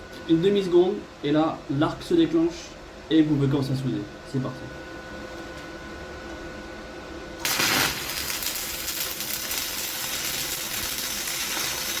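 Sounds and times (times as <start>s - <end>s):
welding arc crackling: 7.4s - 12.0s.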